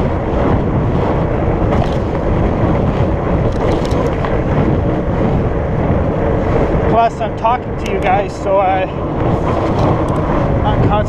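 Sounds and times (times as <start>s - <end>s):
tyres rolling on pavement: 0.0s - 11.0s
wind buffeting microphone: 0.0s - 11.0s.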